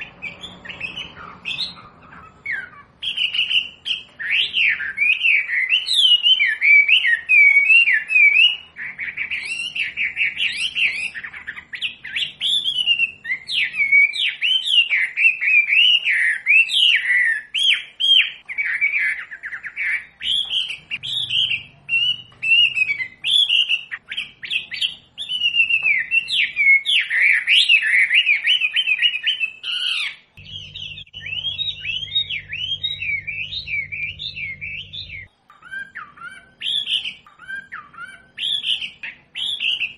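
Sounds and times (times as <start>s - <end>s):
bird singing chirps and trills: 0.0s - 39.9s
low steady hum: 30.3s - 38.4s.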